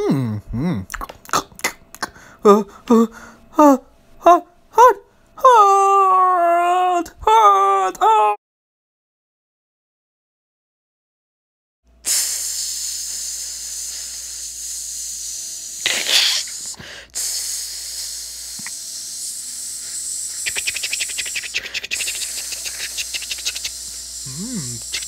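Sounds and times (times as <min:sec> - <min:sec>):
high-pitched hiss: 0:12.1 - 0:25.0.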